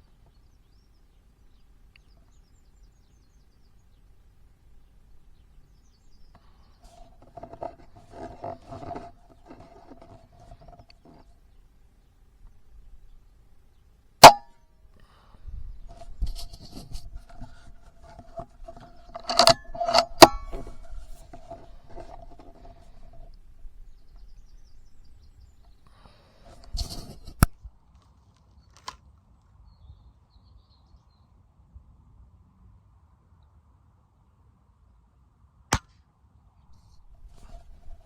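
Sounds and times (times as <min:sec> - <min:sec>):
handling noise: 0:06.3 - 0:11.3, 0:15.8 - 0:27.6, 0:36.8 - 0:38.0.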